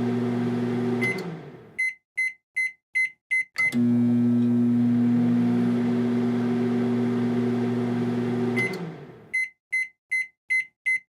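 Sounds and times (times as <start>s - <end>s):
microwave oven humming: 0.0s - 1.7s, 3.7s - 9.2s
microwave beeps: 0.9s - 4.0s, 8.4s - 11.0s.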